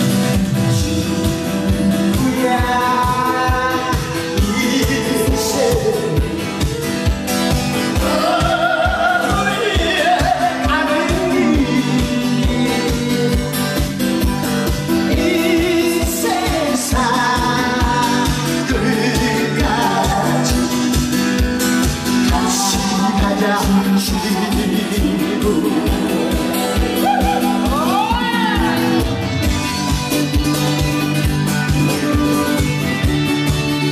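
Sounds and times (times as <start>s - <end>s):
person singing: 0.0s - 6.8s, 7.9s - 14.1s, 14.9s - 21.2s, 22.1s - 29.8s
fast drum beat: 0.3s - 33.2s.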